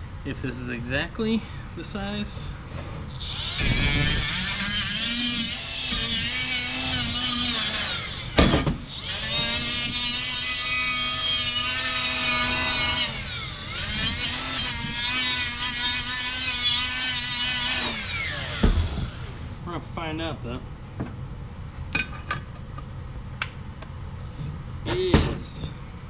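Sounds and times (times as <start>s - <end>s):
power tool working metal: 3.1s - 19.4s.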